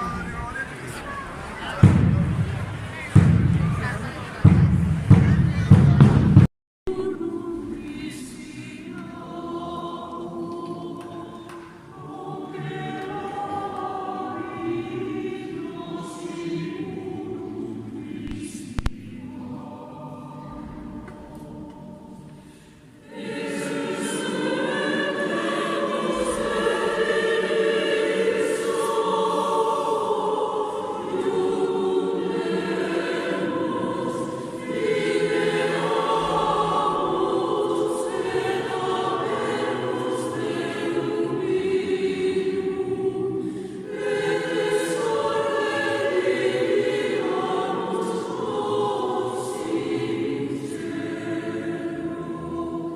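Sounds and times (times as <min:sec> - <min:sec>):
choir singing: 0:05.6 - 0:52.9
sharp click: 0:18.3 - 0:19.1.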